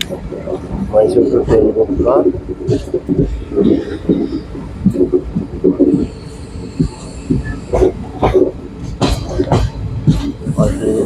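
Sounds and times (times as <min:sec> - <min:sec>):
train rumbling: 0:00.0 - 0:11.0
sharp knocks and clanks: 0:07.4 - 0:10.4.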